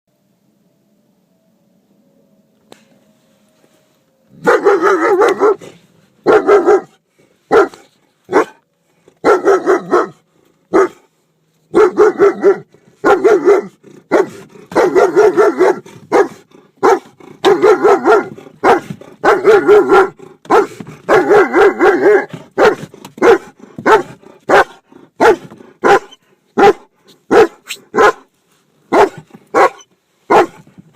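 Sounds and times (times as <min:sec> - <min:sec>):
dog barking: 0:04.4 - 0:08.6, 0:09.2 - 0:11.1, 0:11.7 - 0:28.3, 0:28.9 - 0:30.7.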